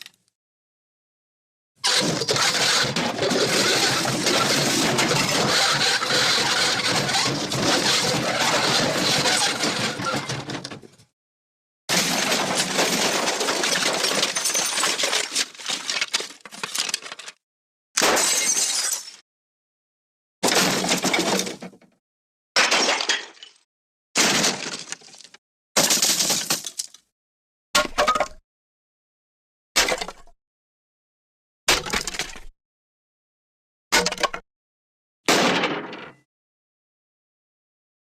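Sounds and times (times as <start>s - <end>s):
crash of things breaking: 1.8s - 10.9s, 11.9s - 17.3s, 20.4s - 21.8s, 22.6s - 23.6s, 24.2s - 26.9s, 35.3s - 36.2s.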